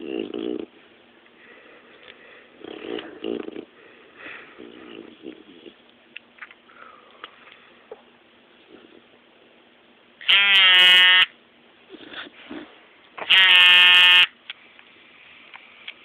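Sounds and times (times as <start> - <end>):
dog snoring: 0.0 - 0.7, 2.6 - 5.8.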